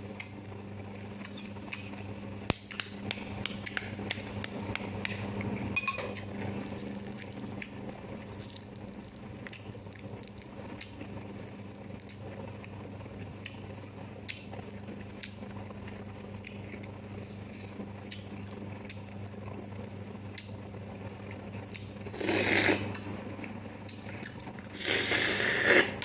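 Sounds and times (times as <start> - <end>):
steady low hum: 0.0 - 26.0
hard sharp taps and clinks: 5.8 - 6.2.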